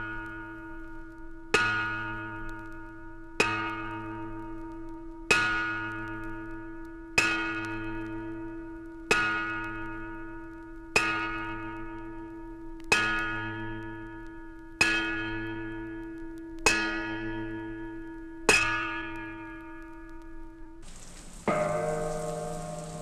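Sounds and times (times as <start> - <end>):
bell tolling slowly: 20.9 - 23.0.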